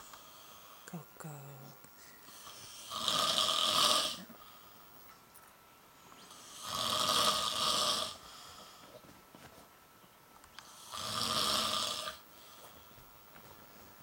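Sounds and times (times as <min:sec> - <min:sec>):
man snoring: 0:02.4 - 0:04.4, 0:06.3 - 0:08.2, 0:10.8 - 0:12.2.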